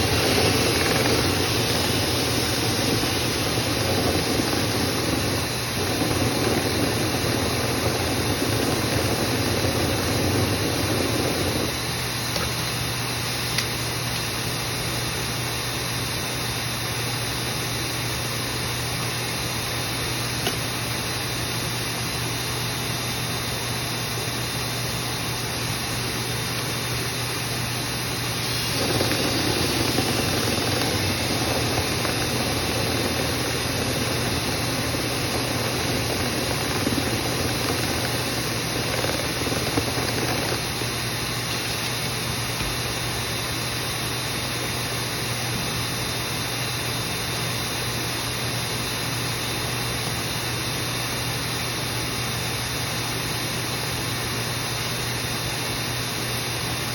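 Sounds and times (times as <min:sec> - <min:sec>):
vent cleaning motor running: 0:00.0 - 0:56.9.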